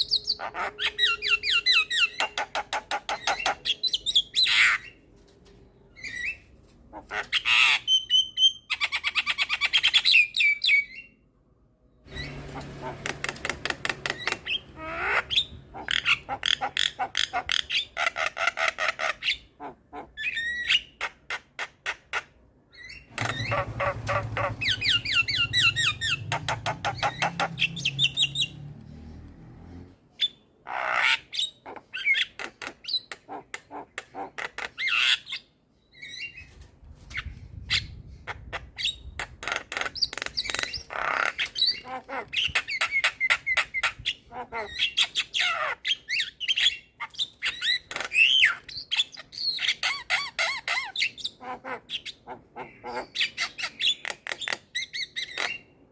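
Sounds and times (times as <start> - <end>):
bird singing varied song: 0.0 - 5.0, 22.7 - 29.1.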